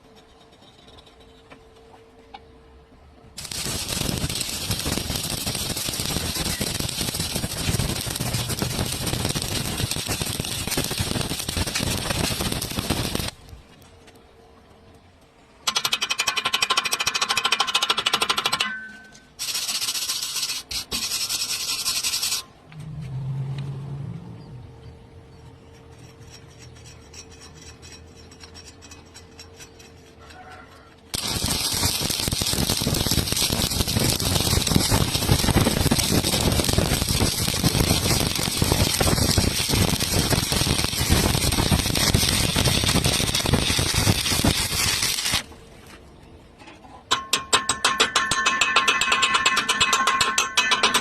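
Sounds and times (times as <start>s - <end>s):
welding arc crackling: 3.4s - 13.4s, 19.4s - 22.4s, 31.1s - 45.5s.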